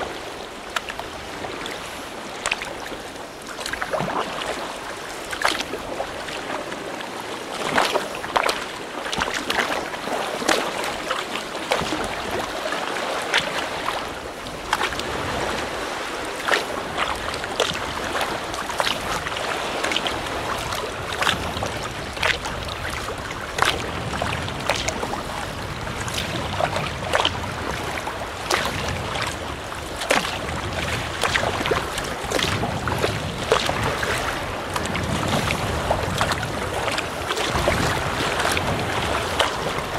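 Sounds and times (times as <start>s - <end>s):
paddle blades splashing: 0.0s - 39.9s
water washing against hull: 0.0s - 39.9s
wind on microphone: 9.2s - 39.9s.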